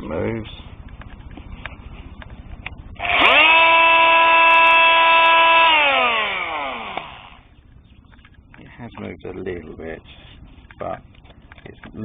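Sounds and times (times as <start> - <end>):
oscillating multitool humming: 3.0 - 8.2.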